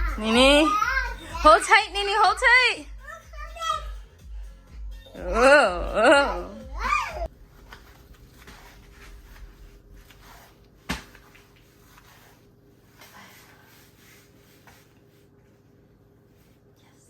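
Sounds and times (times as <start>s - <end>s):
faint rustling and handling: 6.9s - 17.0s.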